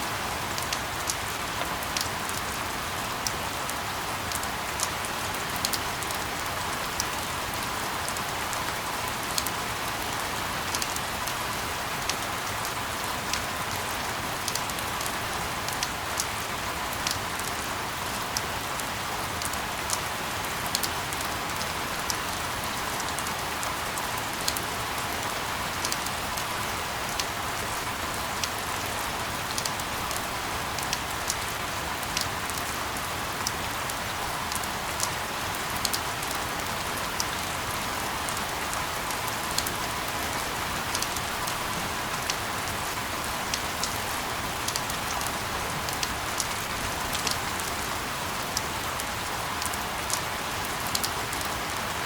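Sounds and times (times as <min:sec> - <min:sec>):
steady rain hiss: 0:00.0 - 0:52.0
raindrops ticking on a surface: 0:00.1 - 0:52.0.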